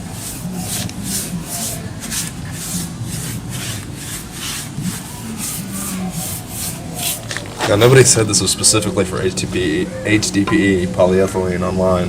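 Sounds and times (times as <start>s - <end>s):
brush scrubbing plastic tub: 0.0s - 8.4s.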